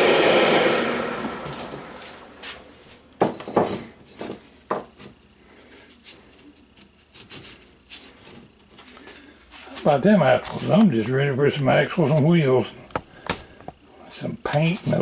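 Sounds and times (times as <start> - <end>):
bench power tool winding down: 0.0 - 2.6
wooden pieces knocking on bench: 3.2 - 4.9.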